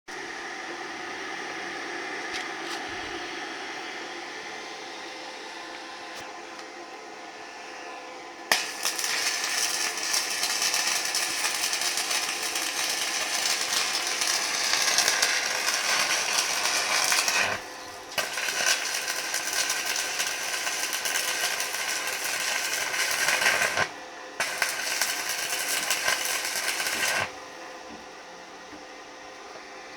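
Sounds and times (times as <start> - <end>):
welder hum: 0.1 - 29.9
welding arc crackling and sizzling: 8.5 - 27.4.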